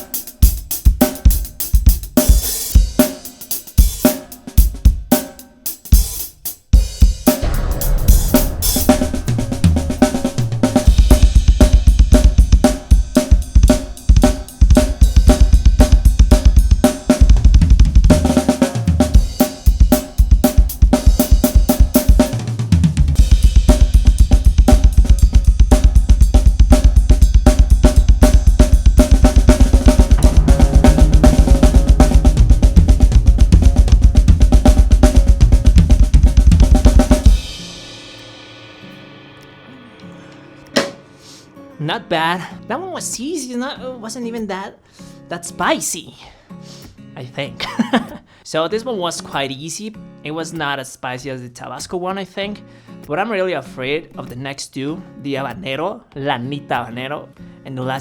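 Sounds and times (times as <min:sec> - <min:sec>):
drum kit played fast: 0:00.0 - 0:41.5
backing track music: 0:00.0 - 0:43.1
cymbals ringing: 0:07.4 - 0:11.7, 0:29.8 - 0:34.0.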